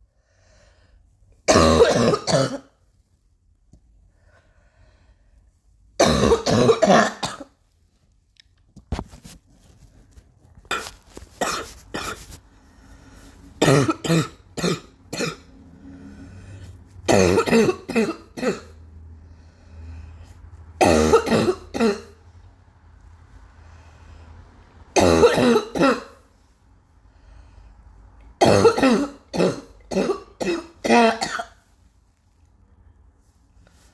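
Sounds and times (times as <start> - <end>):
person coughing: 1.5 - 2.8, 6.0 - 7.5, 10.7 - 12.3, 13.6 - 15.5, 17.1 - 18.8, 20.8 - 22.2, 25.0 - 26.2, 28.4 - 31.6.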